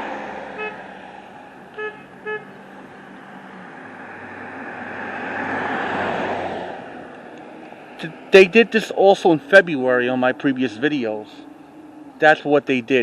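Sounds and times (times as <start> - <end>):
street traffic: 0.0 - 13.0
vehicle passing close: 0.0 - 13.0
car horn toots: 0.6 - 0.8, 1.7 - 2.6.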